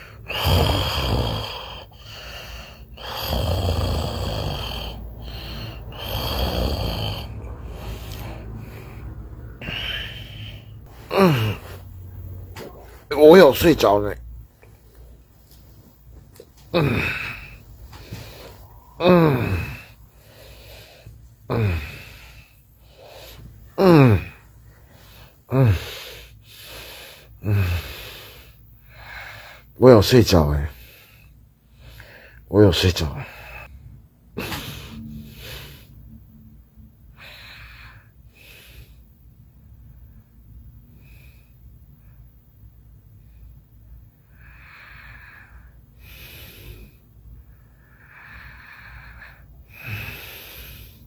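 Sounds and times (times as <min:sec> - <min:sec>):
person snoring: 0:00.0 - 0:12.9, 0:16.7 - 0:23.2, 0:48.0 - 0:51.0.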